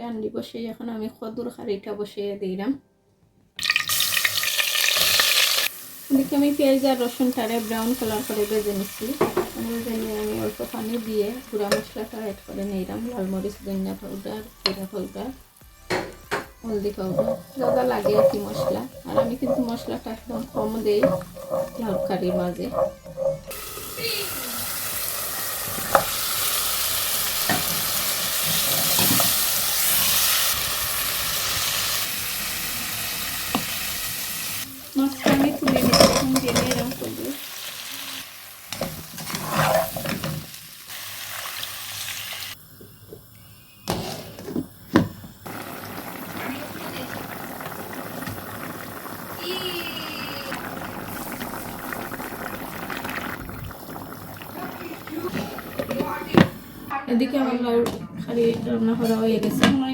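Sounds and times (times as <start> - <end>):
food sizzling in hot oil: 3.6 - 56.9
utensil knocking against pot: 15.9 - 23.5
food bubbling in pot: 16.8 - 28.5, 44.3 - 56.9.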